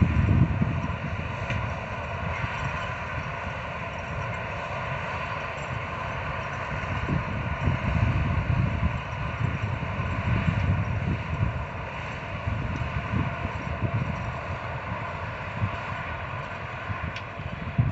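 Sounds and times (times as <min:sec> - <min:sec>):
farm machinery rumbling: 0:00.0 - 0:17.9.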